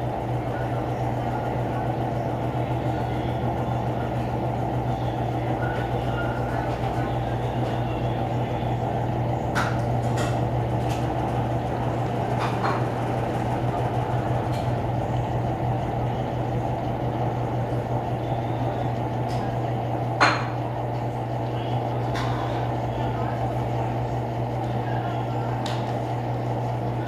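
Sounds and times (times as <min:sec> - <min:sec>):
washing machine humming: 0:00.0 - 0:27.0.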